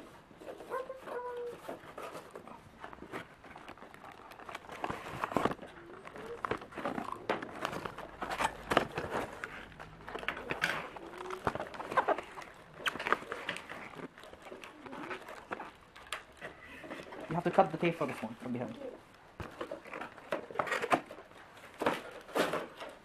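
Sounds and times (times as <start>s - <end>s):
plastic packaging crinkling: 0.0s - 23.0s.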